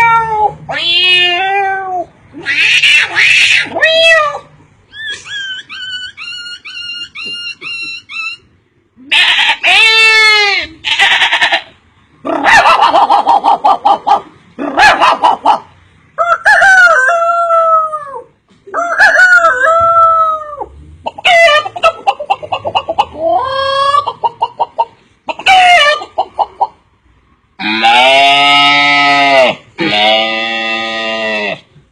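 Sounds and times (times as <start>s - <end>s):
man imitating hens clucking: 11.6s - 26.8s
man imitating rooster crowing: 16.2s - 21.7s.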